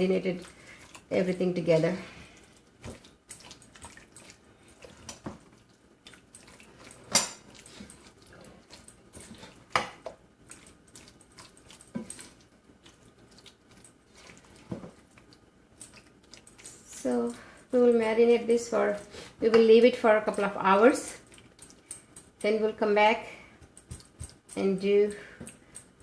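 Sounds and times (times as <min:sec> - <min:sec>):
wet squelches of mixing meat: 0:00.0 - 0:19.5.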